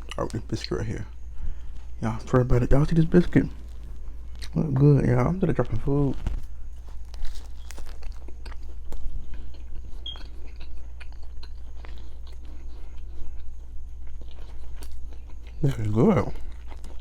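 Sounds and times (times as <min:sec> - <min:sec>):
person chewing food: 0:00.0 - 0:05.2, 0:06.1 - 0:17.0
steady low hum: 0:00.0 - 0:17.0
biting into sandwich: 0:05.9 - 0:17.0.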